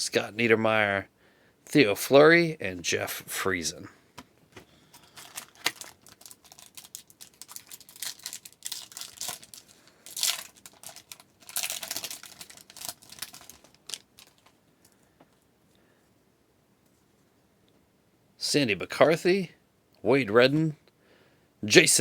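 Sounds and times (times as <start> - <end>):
wrapper tearing and crinkling: 4.9 - 14.6.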